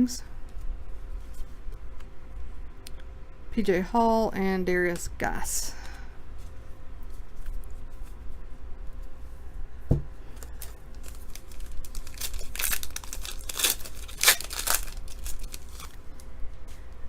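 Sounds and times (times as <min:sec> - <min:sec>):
wrapper tearing and crinkling: 0:10.6 - 0:16.0.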